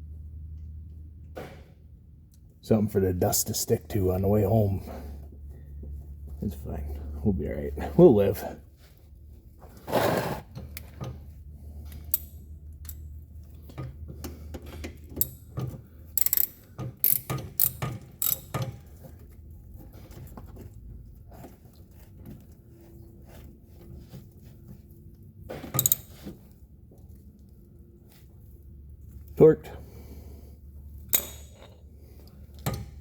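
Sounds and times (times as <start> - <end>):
ratchet wrench clicking: 16.2 - 18.8.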